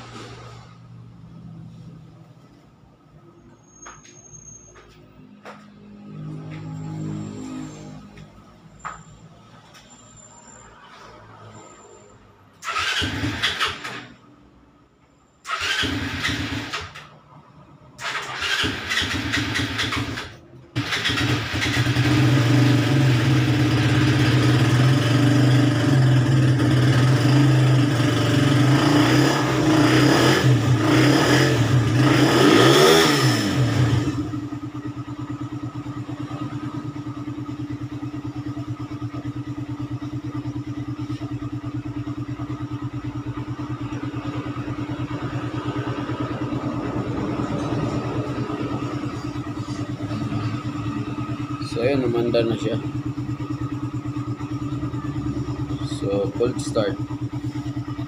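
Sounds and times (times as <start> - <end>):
motorcycle engine revving and idling: 0.0 - 3.2, 4.8 - 9.0, 12.6 - 14.6, 15.4 - 58.0
motorcycle engine cranking: 12.6 - 14.2, 15.4 - 17.2, 18.0 - 24.8.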